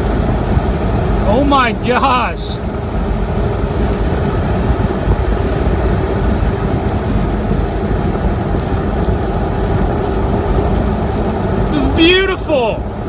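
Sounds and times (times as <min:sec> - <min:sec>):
car road and engine rumble: 0:00.0 - 0:13.0.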